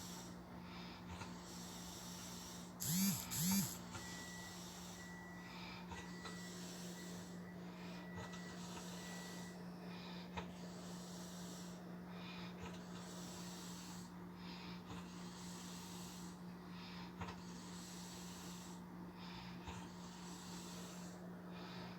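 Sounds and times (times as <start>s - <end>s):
man snoring: 2.8s - 3.8s.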